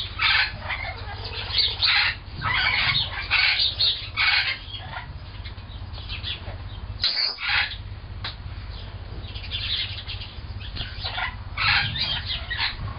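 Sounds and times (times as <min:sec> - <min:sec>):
steady low hum: 0:00.0 - 0:12.9
cockatoos making raspy noises: 0:00.1 - 0:05.2.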